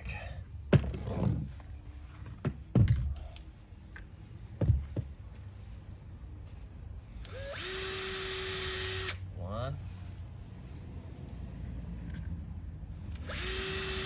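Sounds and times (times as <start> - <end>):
objects knocking on hard surface: 4.6 - 5.1.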